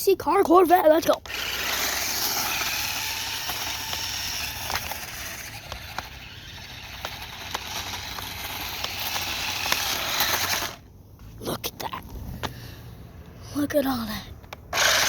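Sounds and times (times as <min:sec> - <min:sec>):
toy car motor hiss: 0:01.2 - 0:10.8, 0:14.7 - 0:15.0.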